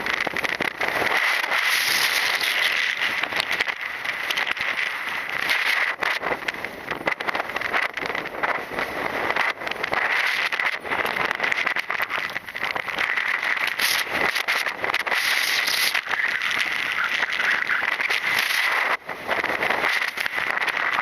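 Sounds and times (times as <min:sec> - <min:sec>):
wind buffeting microphone: 0:00.0 - 0:21.0
faint high whine: 0:15.2 - 0:19.0.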